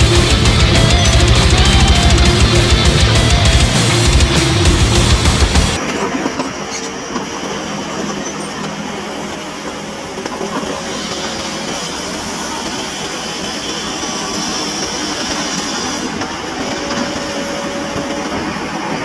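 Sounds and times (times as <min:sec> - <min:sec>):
music: 0:00.0 - 0:05.8
construction machinery engine running: 0:00.0 - 0:06.7.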